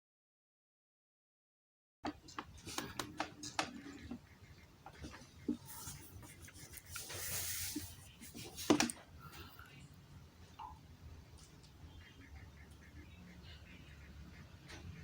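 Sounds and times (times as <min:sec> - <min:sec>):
hissing rustle: 0:05.6 - 0:09.0.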